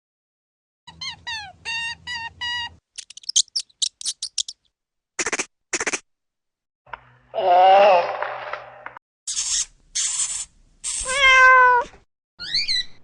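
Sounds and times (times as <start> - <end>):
rapid high chirping clicks: 3.0 - 6.0
animal hiss: 9.3 - 11.2.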